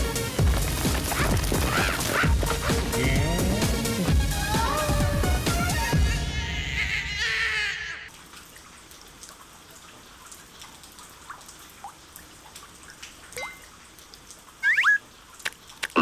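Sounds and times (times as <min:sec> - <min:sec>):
water drips: 0:08.1 - 0:16.0.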